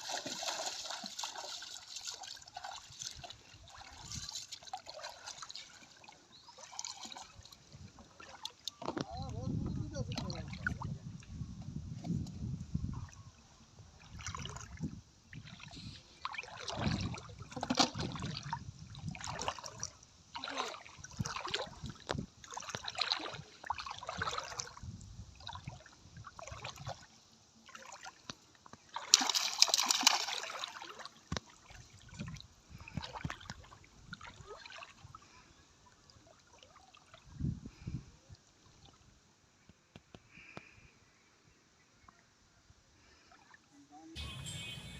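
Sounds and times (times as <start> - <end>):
water splashing and sloshing: 0.0 - 11.0, 13.9 - 37.9.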